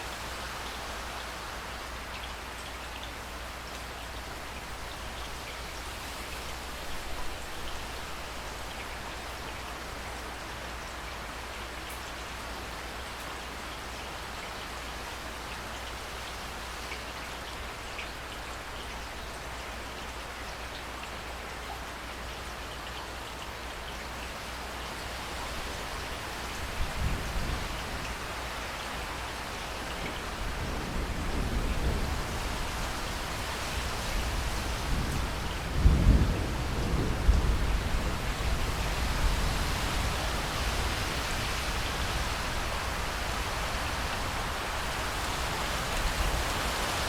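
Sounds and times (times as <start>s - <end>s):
rain hissing: 25.1s - 47.0s.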